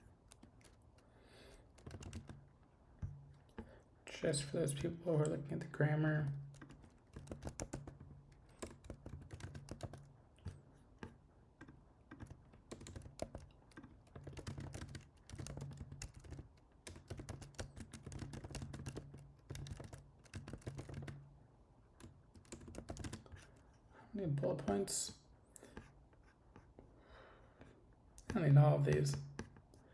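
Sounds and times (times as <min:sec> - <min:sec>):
typing on keyboard: 0:00.0 - 0:03.6, 0:04.5 - 0:21.3, 0:22.0 - 0:23.6.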